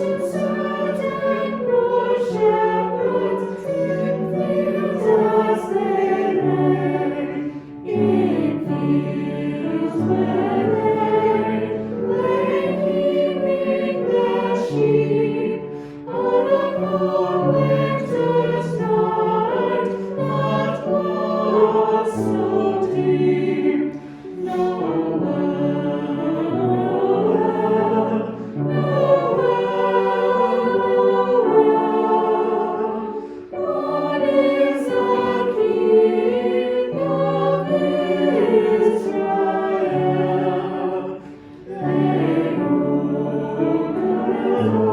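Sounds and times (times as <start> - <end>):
choir breathing: 0.0 - 44.9
choir singing a hymn: 0.0 - 44.9.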